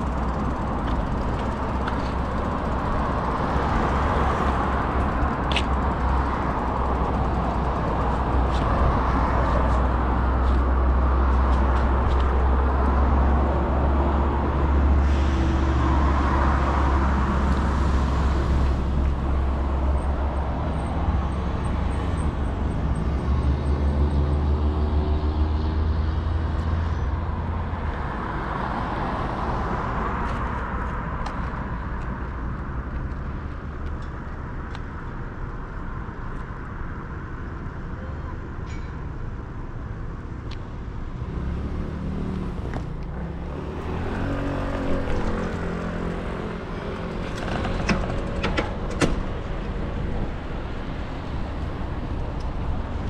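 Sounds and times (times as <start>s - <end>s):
heavy low rumble: 0.0s - 22.6s
cars passing: 0.0s - 36.1s, 40.0s - 53.0s.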